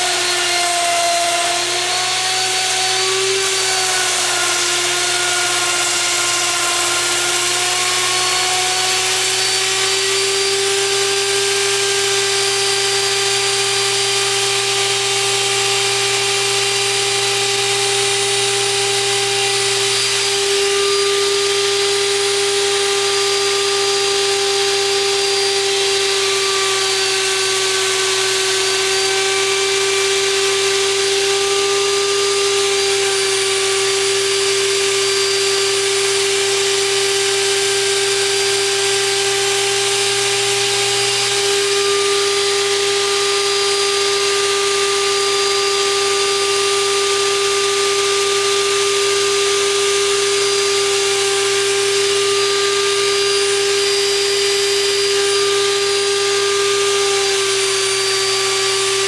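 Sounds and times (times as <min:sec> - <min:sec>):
wood router whining: 0:00.0 - 0:59.0.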